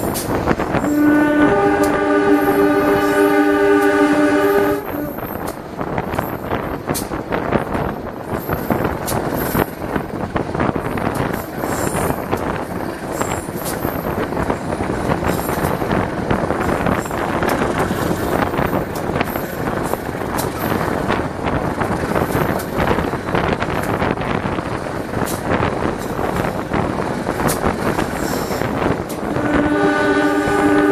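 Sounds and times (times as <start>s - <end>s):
sharp clicks of train wheels: 0.0s - 2.0s, 2.7s - 29.6s
train wheels rumbling on rails: 0.0s - 30.9s.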